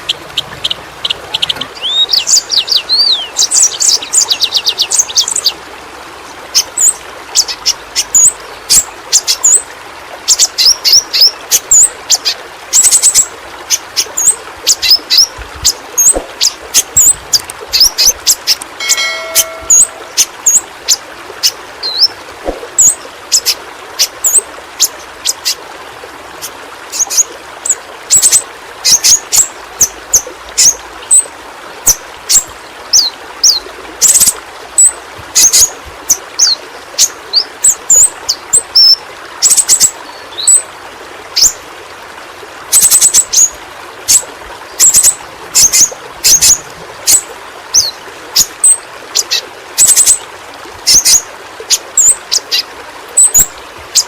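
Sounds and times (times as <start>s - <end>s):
bird high chirps: 0.4s - 5.4s, 18.8s - 20.6s.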